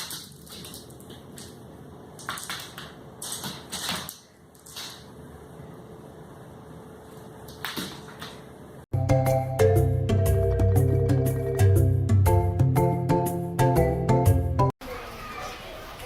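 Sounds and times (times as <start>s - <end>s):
low background hum: 0.0s - 11.7s.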